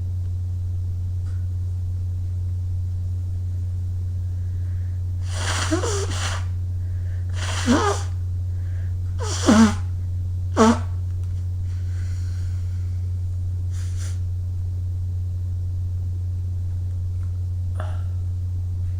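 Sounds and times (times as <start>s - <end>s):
quiet breaths: 4.2s - 10.0s, 11.6s - 14.3s, 17.7s - 18.9s
person sneezing: 5.2s - 6.5s, 7.3s - 8.2s, 9.2s - 9.9s, 10.6s - 10.9s.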